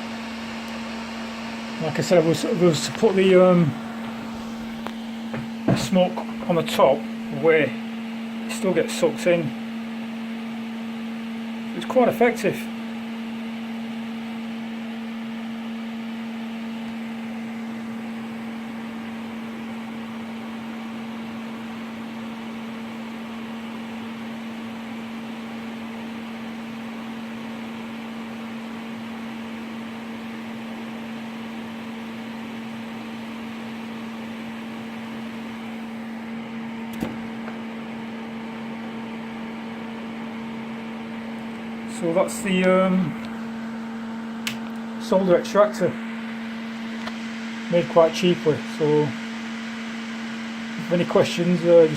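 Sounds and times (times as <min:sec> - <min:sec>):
electric fan humming: 0:00.0 - 0:51.9
sharp click: 0:44.4 - 0:44.8.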